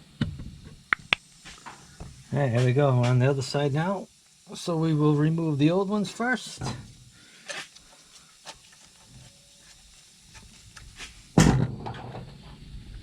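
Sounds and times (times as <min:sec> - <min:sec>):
loud thump: 0:11.4 - 0:12.0.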